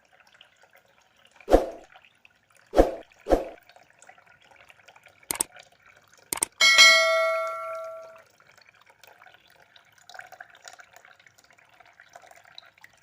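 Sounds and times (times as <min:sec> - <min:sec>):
faint water trickle: 0:00.0 - 0:13.0
sharp clicks: 0:06.3 - 0:06.6.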